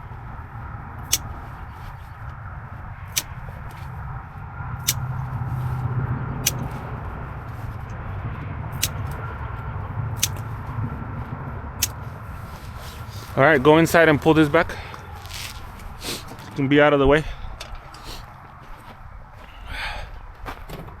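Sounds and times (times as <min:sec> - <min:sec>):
low rumble: 0:00.0 - 0:17.8
wire cutters snipping cables: 0:01.0 - 0:01.4, 0:03.1 - 0:03.9, 0:04.8 - 0:05.3, 0:06.4 - 0:06.8, 0:08.7 - 0:09.3, 0:10.2 - 0:10.6, 0:11.8 - 0:12.1.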